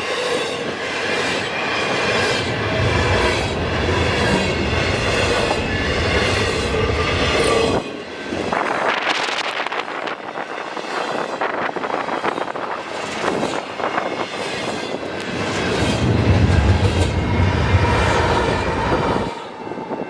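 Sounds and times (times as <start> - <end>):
train wheels clattering: 0.0 - 9.9, 10.8 - 19.4
diesel locomotive engine rumble: 1.4 - 10.1, 14.9 - 20.0.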